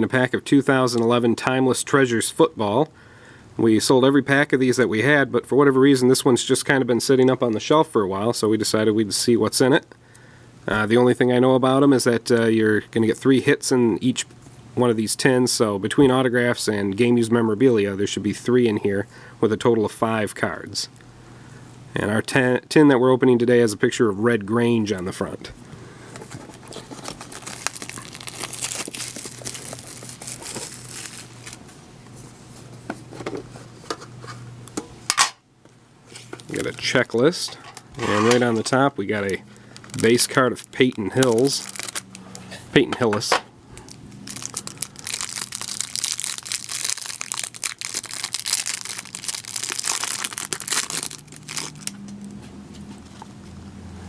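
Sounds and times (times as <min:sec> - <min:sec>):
plastic wrapping crinkling and tearing: 0:26.6 - 0:31.7, 0:36.4 - 0:37.3, 0:38.0 - 0:42.4, 0:43.8 - 0:52.0.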